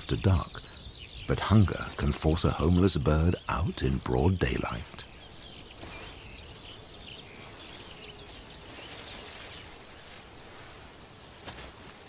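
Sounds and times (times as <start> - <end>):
faint bird chirps: 0.0 - 11.9
insect chirping in pulses: 0.0 - 12.0
low outdoor background: 0.0 - 12.0.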